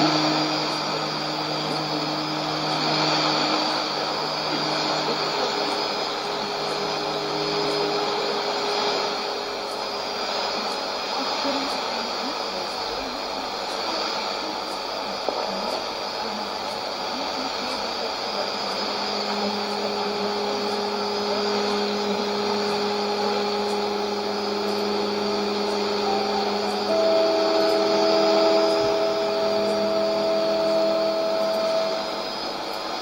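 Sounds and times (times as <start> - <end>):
higher test tone: 0.0 - 11.2, 18.4 - 33.0
radio hiss and static: 0.0 - 33.0
radio test tones: 0.0 - 33.0.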